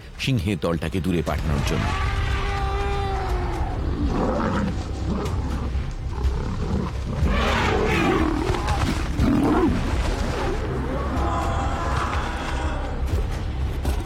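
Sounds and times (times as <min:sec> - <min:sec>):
lions growling and snarling: 0:03.4 - 0:12.2.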